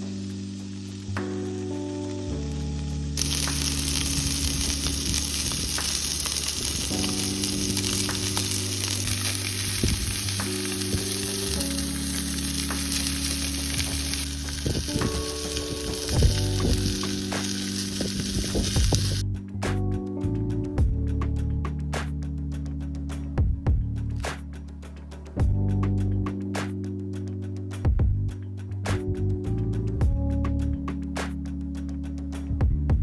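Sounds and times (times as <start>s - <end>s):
food sizzling in a pan: 0.0s - 19.2s.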